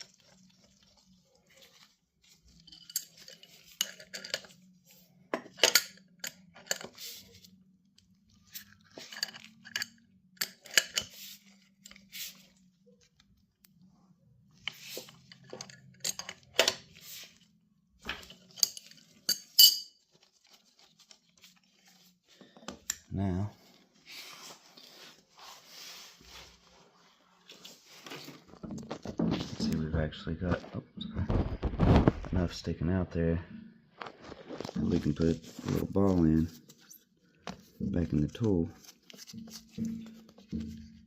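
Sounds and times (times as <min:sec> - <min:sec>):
metal tool parts clinking: 0:02.5 - 0:04.6, 0:05.5 - 0:07.0, 0:08.9 - 0:11.2, 0:15.3 - 0:16.8, 0:18.2 - 0:20.0.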